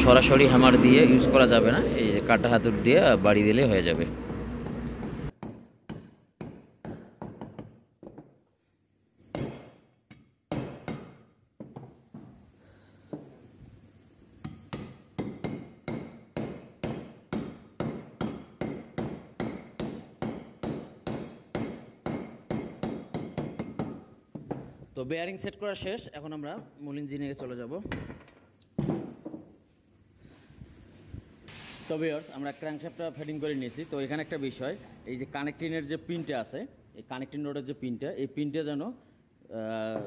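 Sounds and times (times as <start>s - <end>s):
hammer tapping metal: 14.4s - 24.1s.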